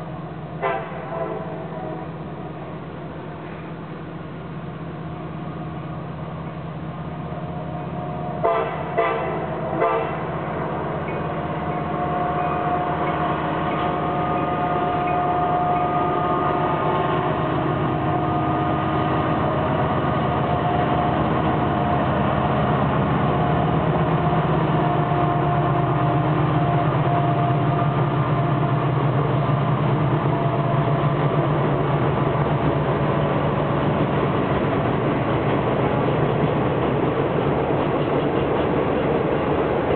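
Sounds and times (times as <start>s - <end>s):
diesel locomotive engines: 0.0s - 39.9s
train horn toots: 0.6s - 2.2s, 8.0s - 10.5s, 11.7s - 17.1s, 24.8s - 27.8s.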